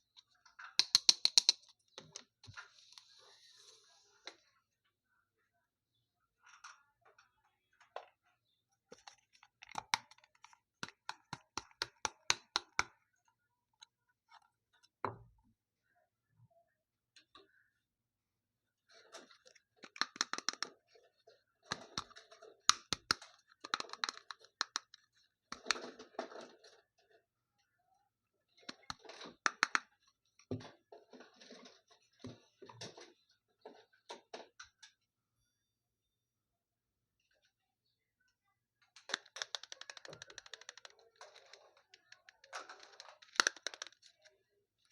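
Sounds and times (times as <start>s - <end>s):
sharp clicks of objects handled: 0.6s - 2.6s, 19.2s - 20.8s, 21.7s - 26.0s, 39.0s - 44.3s.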